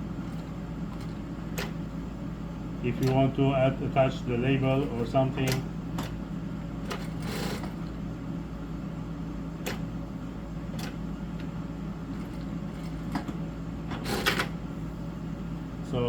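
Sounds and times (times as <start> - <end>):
sewing machine humming: 6.8 - 7.9.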